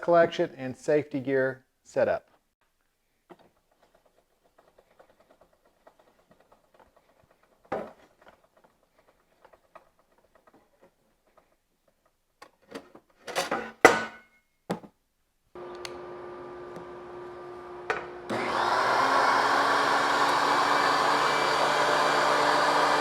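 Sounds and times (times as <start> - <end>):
faint clicks and rustles: 2.3 - 13.2
knocks and clatters: 3.3 - 14.9.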